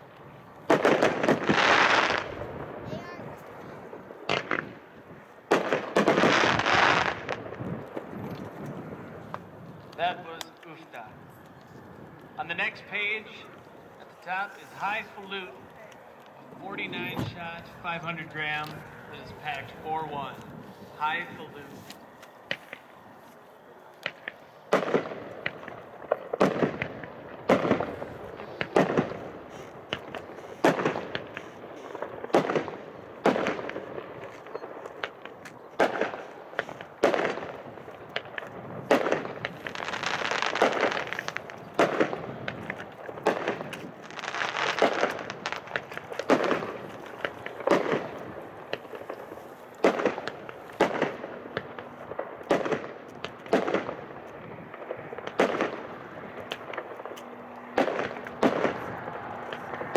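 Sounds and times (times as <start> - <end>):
firework crackling hiss: 0.7 - 2.9, 5.5 - 8.1, 35.8 - 51.3
firework shots banging: 0.7 - 2.9, 3.8 - 11.0, 24.0 - 59.9.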